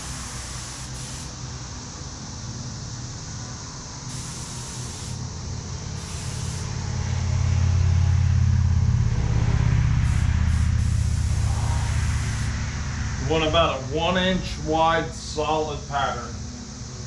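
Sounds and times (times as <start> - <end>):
spurts of spray: 0.0 - 1.4, 4.1 - 5.2, 6.0 - 6.8, 10.0 - 12.6
spray gun hissing: 0.0 - 1.5, 4.1 - 5.3, 5.9 - 6.8, 10.0 - 12.6
low machine drone: 0.0 - 17.0.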